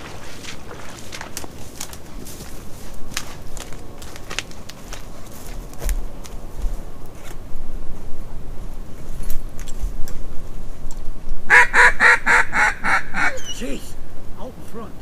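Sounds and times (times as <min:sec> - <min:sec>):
mallard quacks: 0:11.5 - 0:13.5.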